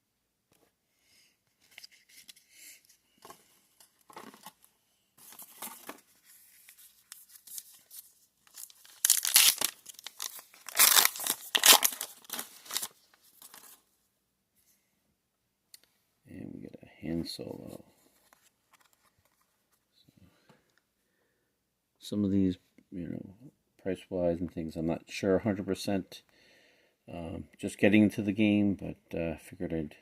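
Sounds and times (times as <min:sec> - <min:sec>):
light handling of cards: 0:01.5 - 0:13.8, 0:17.5 - 0:20.9
foil wrapper tearing and crinkling: 0:07.0 - 0:13.7.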